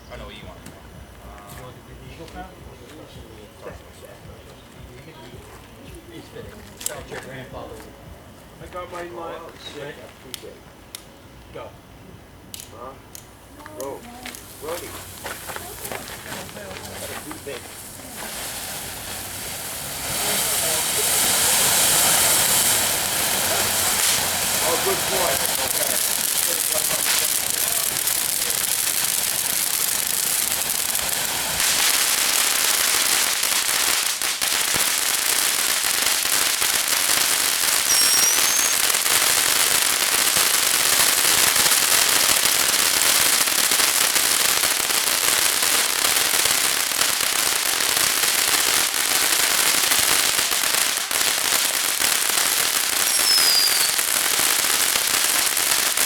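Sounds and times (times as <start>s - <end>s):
firework fountain hissing crackle: 0.0s - 56.0s
faint gliding whistles: 37.8s - 39.0s, 53.0s - 54.1s.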